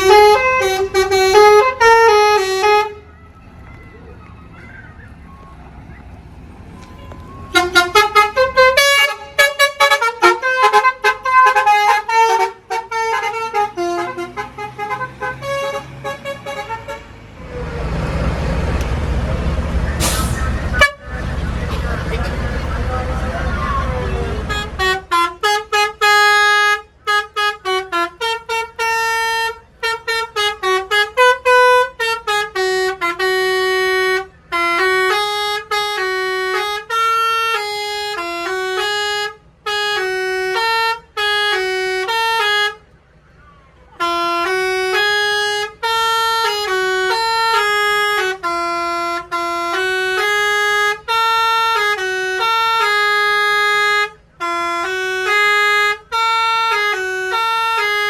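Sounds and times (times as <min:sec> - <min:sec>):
multi-trumpet air horn melody: 0:00.0 - 0:03.0, 0:07.5 - 0:17.1, 0:20.0 - 0:21.1, 0:24.4 - 0:42.8, 0:44.0 - 0:58.0.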